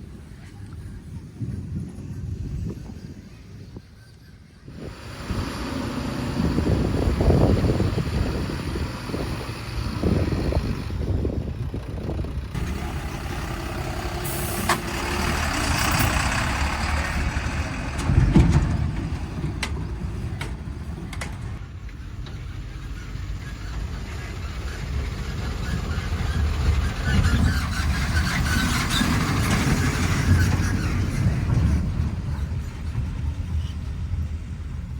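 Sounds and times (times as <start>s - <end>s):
diesel engines running: 4.4s - 34.9s
hiss of air: 14.2s - 15.0s.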